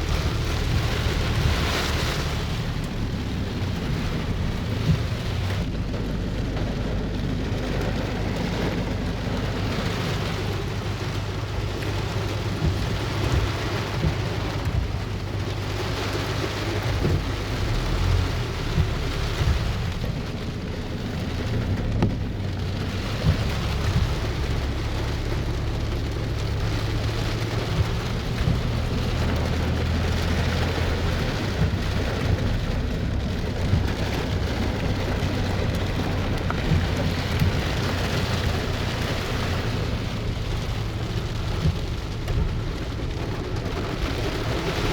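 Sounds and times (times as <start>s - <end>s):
deep rumble: 0.0s - 44.9s
steady rainfall: 0.0s - 44.9s.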